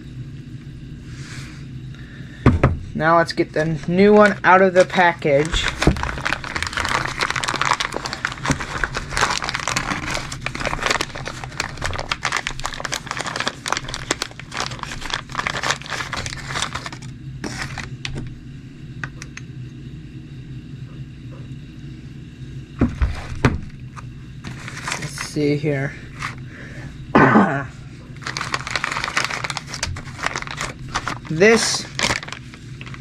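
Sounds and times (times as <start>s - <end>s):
packaging crinkling and tearing: 3.7s - 18.3s, 24.4s - 25.5s, 28.2s - 33.0s.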